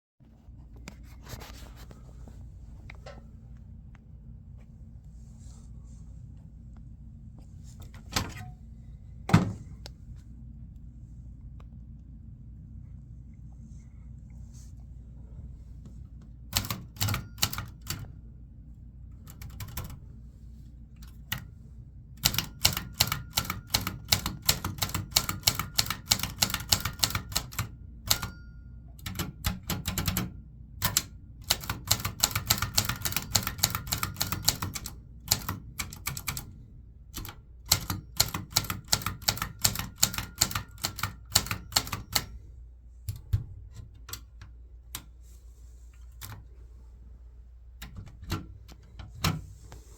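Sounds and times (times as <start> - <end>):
typewriter keys clacking: 16.6 - 18.1, 19.3 - 20.0, 22.2 - 28.4, 29.0 - 36.5, 37.2 - 42.4.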